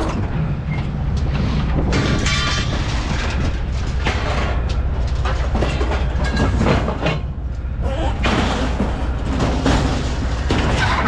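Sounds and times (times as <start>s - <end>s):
low vehicle rumble: 0.0s - 11.0s
loose metal clanking: 8.1s - 11.0s.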